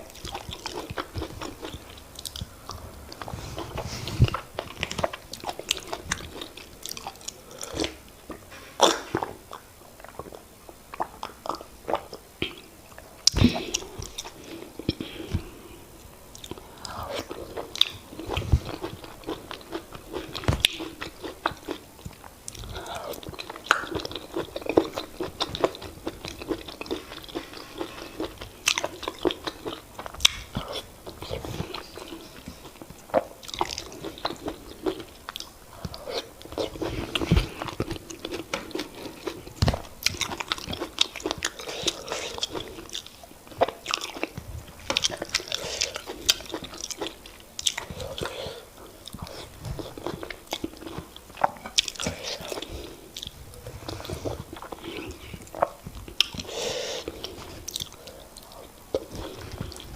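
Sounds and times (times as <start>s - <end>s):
wet chewing and lip smacks: 0.0s - 8.4s, 16.3s - 48.4s, 54.0s - 59.9s.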